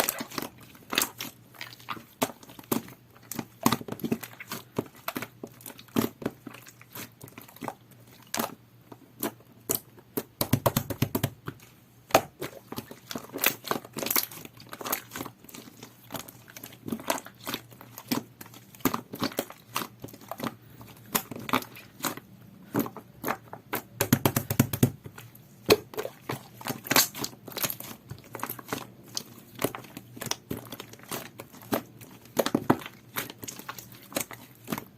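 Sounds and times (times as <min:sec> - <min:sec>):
slime squelching: 0:00.0 - 0:34.9
slime clicking and crackling: 0:09.2 - 0:34.9.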